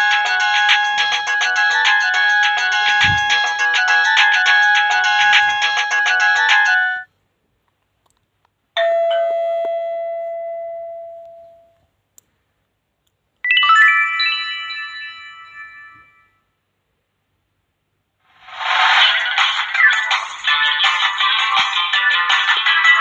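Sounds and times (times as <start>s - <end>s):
phone chime alert tones: 0.3s - 7.1s.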